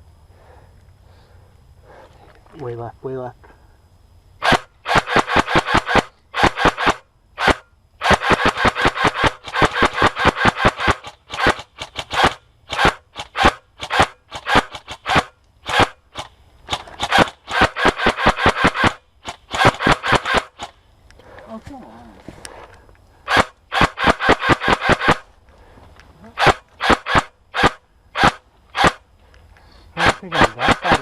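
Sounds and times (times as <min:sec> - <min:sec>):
airsoft gun firing: 0:04.4 - 0:20.8, 0:23.3 - 0:25.3, 0:26.4 - 0:29.0, 0:30.0 - 0:31.0.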